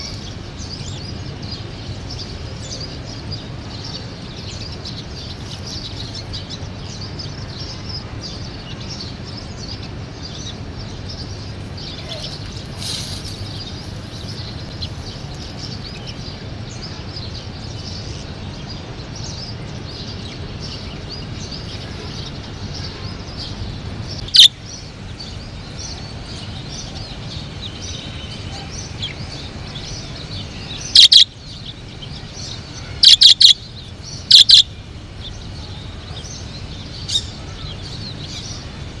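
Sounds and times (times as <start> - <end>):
sharp bird calls: 20.0 - 35.8
budgerigars chattering: 23.4 - 24.6, 25.2 - 35.4.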